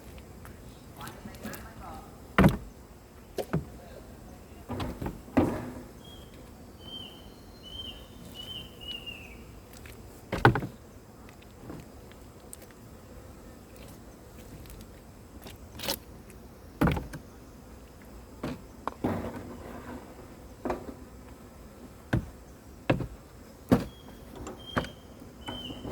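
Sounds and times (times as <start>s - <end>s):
faint steady background noise: 0.0s - 25.9s
knocks and scrapes: 9.8s - 10.8s, 18.4s - 21.4s, 22.1s - 25.9s.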